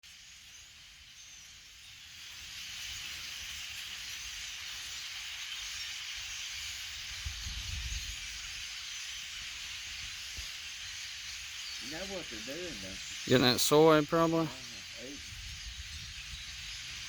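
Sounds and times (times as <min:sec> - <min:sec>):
flock of birds wings and calls: 0:00.1 - 0:17.0
wind bumps on microphone: 0:07.2 - 0:08.5, 0:15.2 - 0:17.0.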